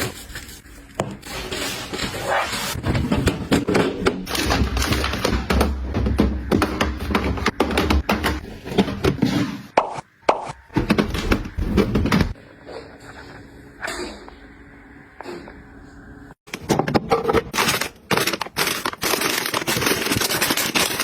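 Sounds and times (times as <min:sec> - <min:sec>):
household items tapping and knocking: 0:02.9 - 0:12.4.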